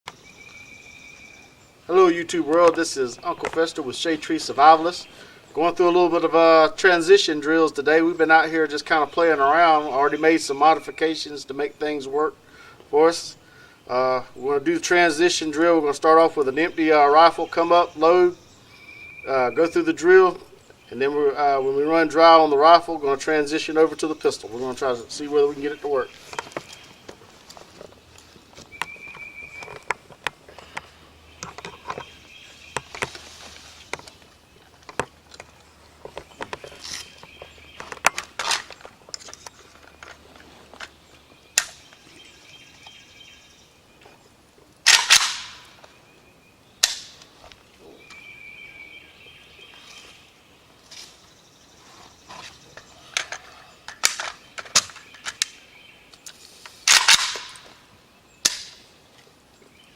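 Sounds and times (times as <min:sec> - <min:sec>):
pistol gunshots: 0:44.8 - 0:45.7, 0:56.9 - 0:57.6
rifle gunshots: 0:44.8 - 0:45.7, 0:56.9 - 0:57.6.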